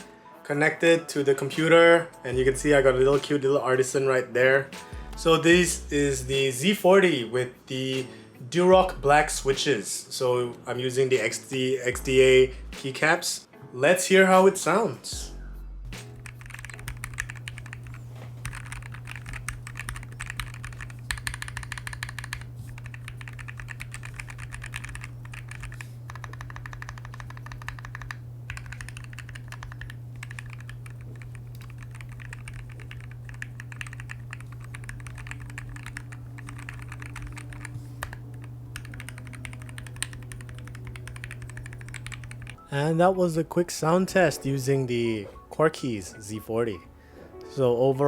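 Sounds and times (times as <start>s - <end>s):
steady low hum: 15.2s - 42.6s
keyboard key clacks: 16.1s - 42.6s.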